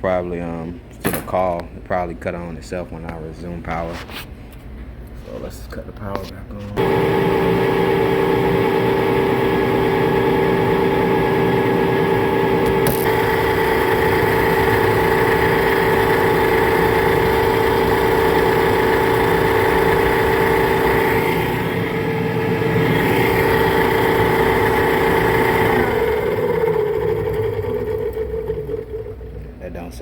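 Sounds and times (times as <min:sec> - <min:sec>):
blower whining over a rumble: 0:06.8 - 0:29.8.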